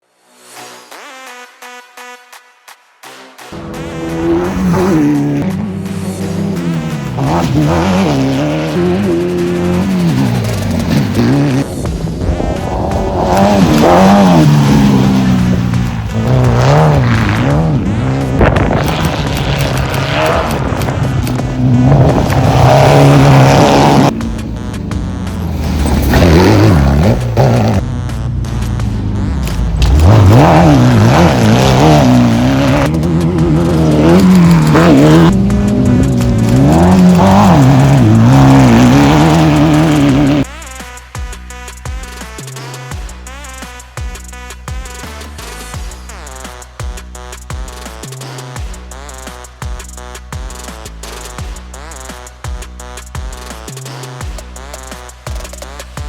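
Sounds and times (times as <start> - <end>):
race car engine revving: 3.5 - 40.5.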